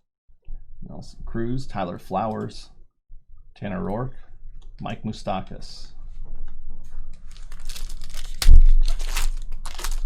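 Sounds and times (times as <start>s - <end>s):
foil wrapper tearing and crinkling: 7.3s - 10.0s.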